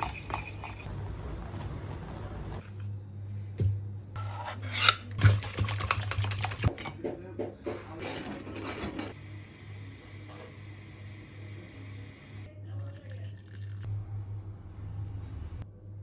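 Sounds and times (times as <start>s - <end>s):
utensil scraping a bowl: 0.0s - 0.9s, 4.2s - 5.2s.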